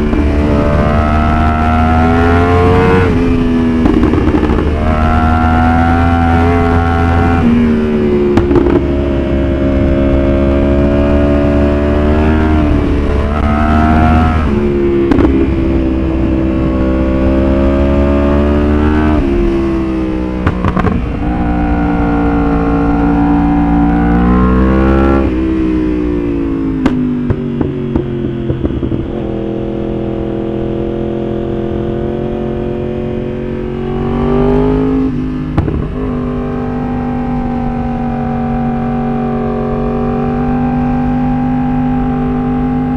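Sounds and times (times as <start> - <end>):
motorcycle engine revving: 0.0 - 42.9
exhaust pops: 2.6 - 5.9, 8.2 - 10.0, 12.6 - 16.2, 19.0 - 22.2, 26.8 - 29.6, 35.4 - 36.5.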